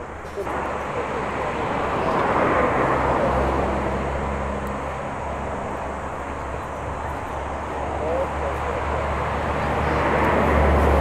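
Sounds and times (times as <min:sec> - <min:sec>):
faint low engine hum: 0:00.0 - 0:11.0
road vehicle passing: 0:00.0 - 0:11.0.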